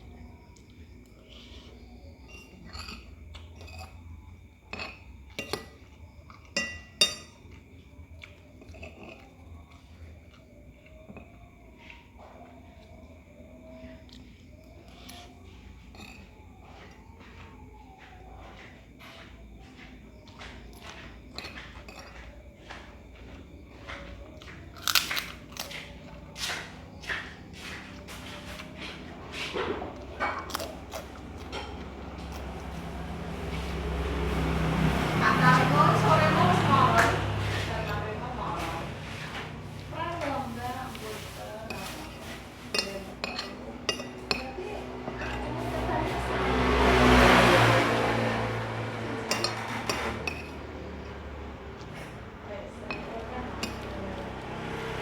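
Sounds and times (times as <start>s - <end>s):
cutlery clinking on plate: 4.7s - 7.6s, 41.7s - 45.4s, 49.2s - 50.8s, 52.9s - 54.0s
biting and chewing: 23.9s - 35.2s.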